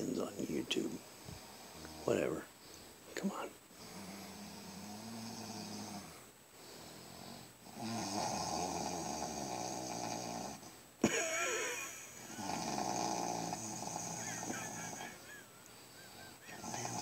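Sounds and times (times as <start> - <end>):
man snoring heavily: 3.8 - 15.4, 16.0 - 17.0.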